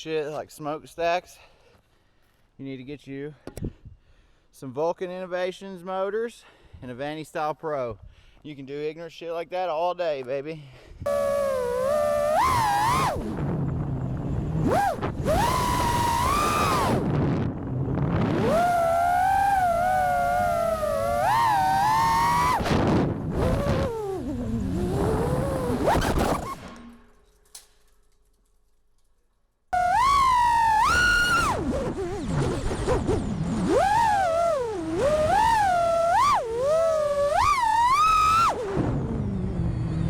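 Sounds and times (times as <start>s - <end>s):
drone motors whining: 11.1s - 27.0s, 29.8s - 40.0s.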